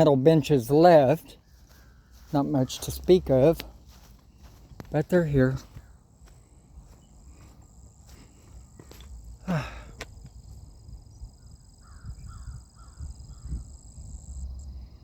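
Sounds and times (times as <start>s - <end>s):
faint bird calls: 1.4s - 3.2s, 11.3s - 13.8s
low voiced grunt: 9.4s - 9.9s.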